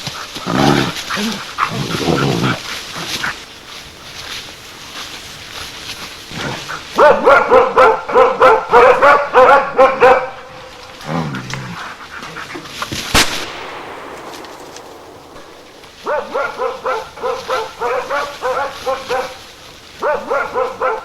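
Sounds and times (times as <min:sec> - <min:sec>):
dog barking: 0:06.5 - 0:10.8, 0:15.9 - 0:21.0.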